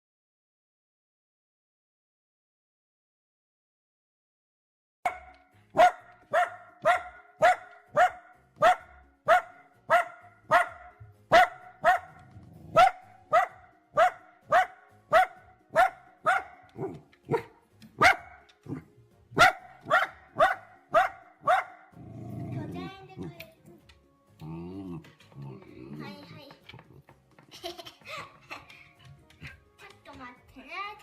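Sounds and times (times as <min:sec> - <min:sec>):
dog barking: 0:05.1 - 0:22.1.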